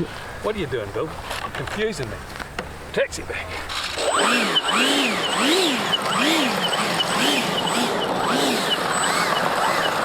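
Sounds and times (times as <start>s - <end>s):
electric ducted-fan motor whining: 3.7s - 10.0s.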